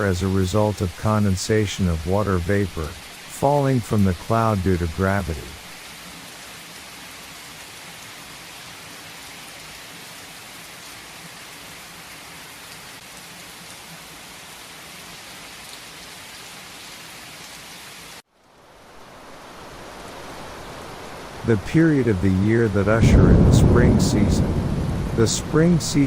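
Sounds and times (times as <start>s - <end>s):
steady rain falling: 0.0s - 26.0s.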